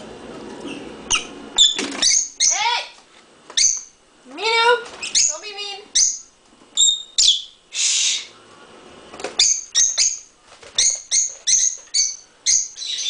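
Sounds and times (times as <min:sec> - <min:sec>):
lovebirds chirping: 0:00.6 - 0:07.6, 0:09.4 - 0:13.0
short hiss: 0:07.7 - 0:08.3.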